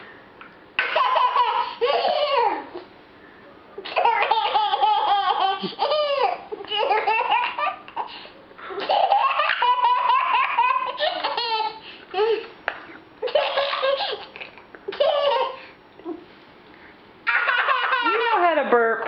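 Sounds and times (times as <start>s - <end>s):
young child laughing: 3.8s - 8.0s, 8.7s - 12.5s, 13.2s - 15.7s, 17.2s - 18.4s.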